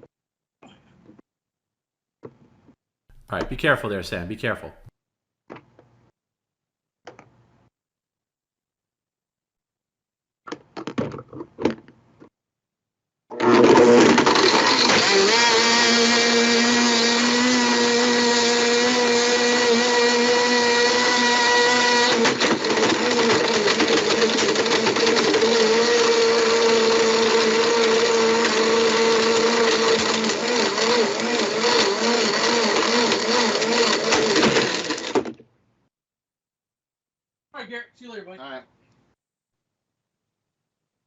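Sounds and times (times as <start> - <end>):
blender motor whining: 13.3 - 35.4.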